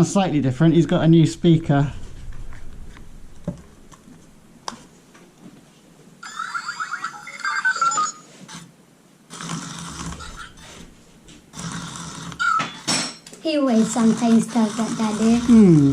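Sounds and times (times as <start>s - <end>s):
robot toy electronic beeping: 6.2s - 8.2s.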